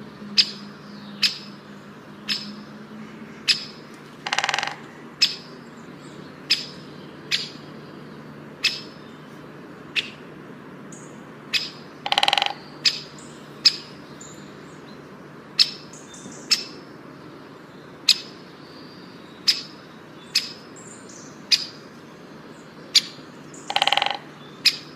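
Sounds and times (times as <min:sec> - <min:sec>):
bird chirping: 0:00.3 - 0:10.2, 0:10.9 - 0:16.9, 0:17.6 - 0:24.9
buzzy rattling bird call: 0:03.5 - 0:05.5, 0:11.6 - 0:13.9, 0:23.7 - 0:24.9.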